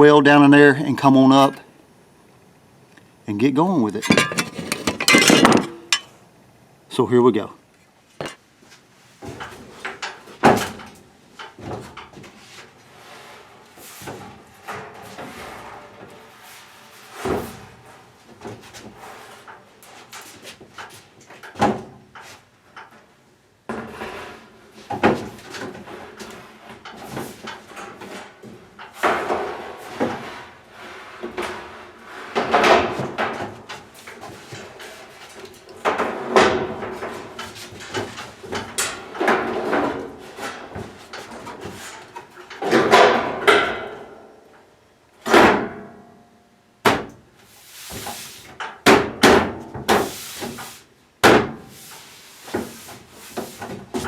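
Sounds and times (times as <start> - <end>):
sheet metal clunks and knocks: 4.0 - 6.0.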